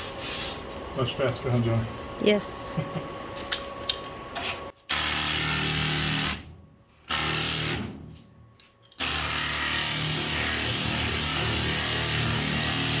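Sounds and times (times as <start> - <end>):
pneumatic air file running: 4.4 - 8.0, 9.0 - 13.0.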